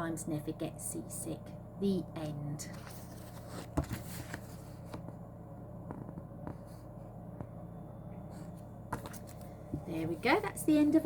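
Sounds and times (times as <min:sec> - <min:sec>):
low steady hum: 0:00.0 - 0:11.0
soft rustles of handling: 0:02.3 - 0:05.3, 0:08.2 - 0:10.6.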